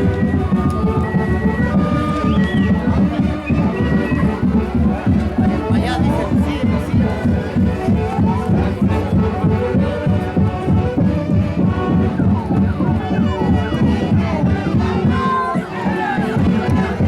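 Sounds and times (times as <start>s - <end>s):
orchestra playing dance music: 0.0s - 12.8s.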